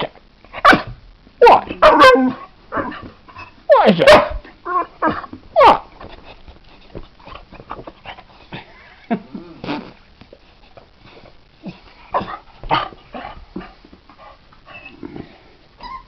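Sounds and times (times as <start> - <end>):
dog whining: 4.1 - 5.8, 14.7 - 16.0.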